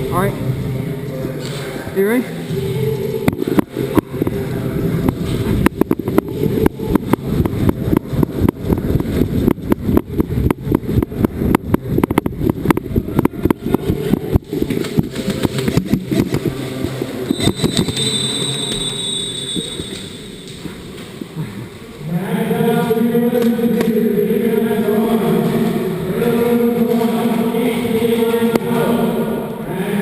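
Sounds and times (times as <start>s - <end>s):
steady low rumble: 0.0s - 17.3s.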